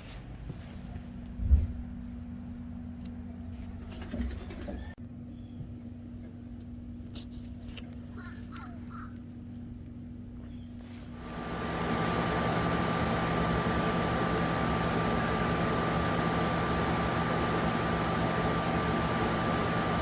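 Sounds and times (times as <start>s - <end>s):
steady low hum: 4.9s - 20.0s.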